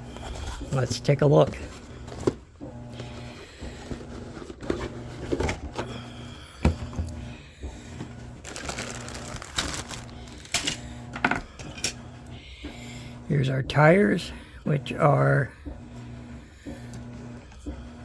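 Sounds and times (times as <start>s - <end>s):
plastic bags crinkling: 8.4s - 10.8s.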